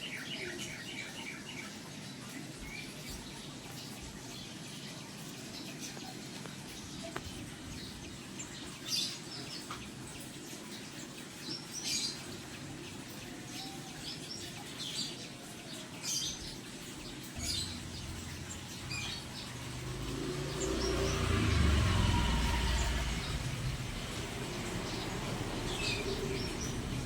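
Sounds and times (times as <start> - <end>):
songbirds chirping: 0.0 - 27.0
low rumble: 17.4 - 27.0.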